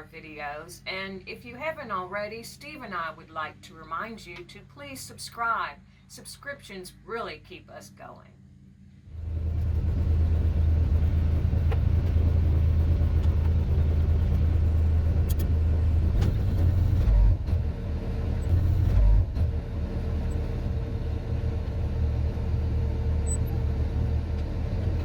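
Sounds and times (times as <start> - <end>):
boat engine droning: 9.0 - 25.0.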